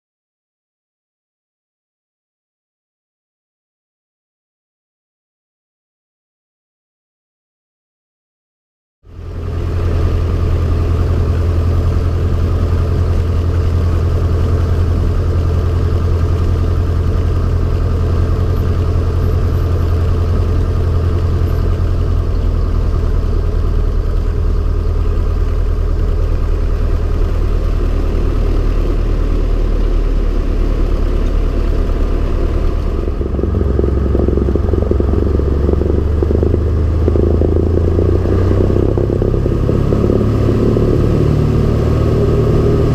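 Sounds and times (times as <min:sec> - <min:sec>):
propeller plane engine drone: 0:09.1 - 0:42.9.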